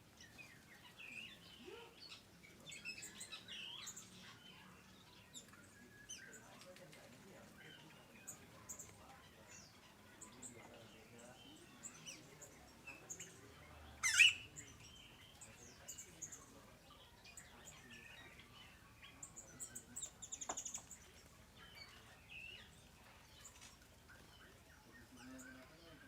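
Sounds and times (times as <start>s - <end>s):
small birds chirping: 0.0s - 26.0s.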